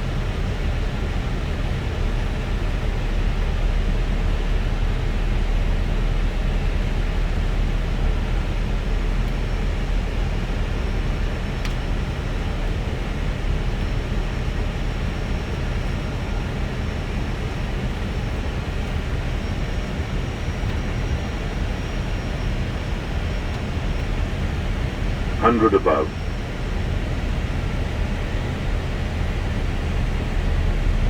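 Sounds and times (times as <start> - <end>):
airflow and engine noise: 0.0 - 31.0
faint high whine: 25.4 - 26.2.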